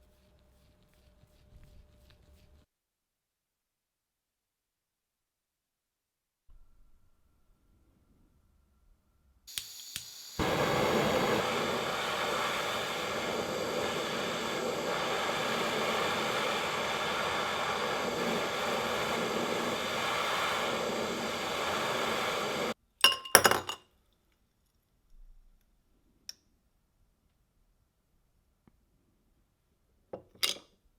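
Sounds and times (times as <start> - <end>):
power tool hissing: 9.5 - 22.8.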